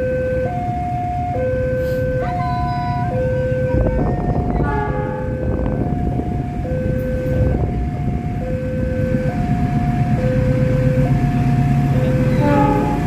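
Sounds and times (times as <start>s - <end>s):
diesel locomotive engine drone: 0.0s - 13.0s
two-tone electronic warning signal: 11.8s - 13.0s.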